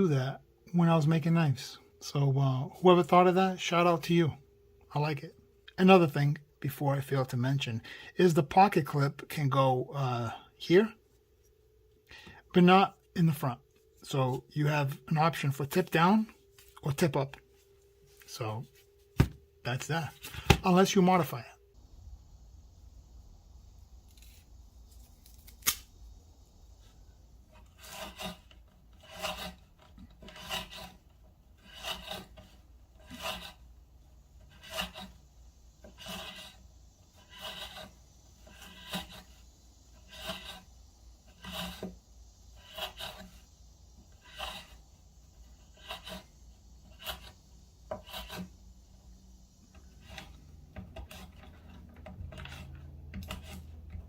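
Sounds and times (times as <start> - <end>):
knife cutting strokes: 24.1 - 25.9.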